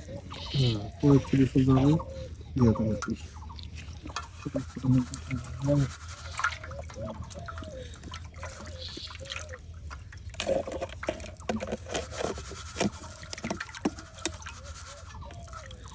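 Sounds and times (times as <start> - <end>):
water dripping and trickling: 0.0 - 15.9.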